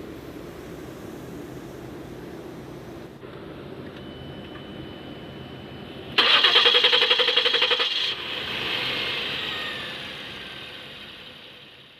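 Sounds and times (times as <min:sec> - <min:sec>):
car engine starting and running: 0:06.1 - 0:11.9.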